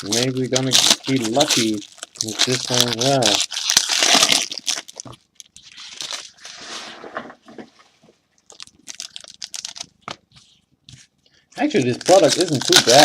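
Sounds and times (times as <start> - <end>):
packaging crinkling and tearing: 0.0 - 6.6, 8.4 - 10.5, 11.6 - 13.0
packaging rustle: 0.0 - 6.7, 8.4 - 10.6, 11.6 - 13.0.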